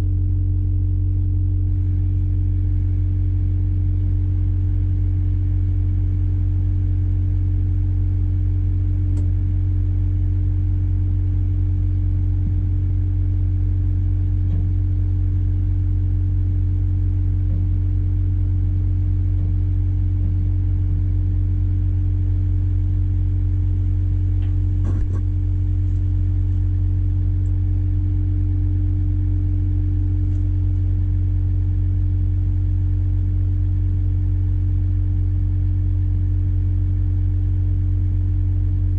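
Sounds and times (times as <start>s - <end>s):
faint click: 9.1s - 9.3s.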